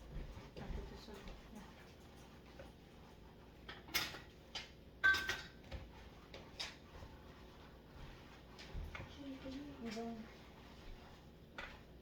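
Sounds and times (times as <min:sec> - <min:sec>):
dishes clinking: 0:03.7 - 0:05.8.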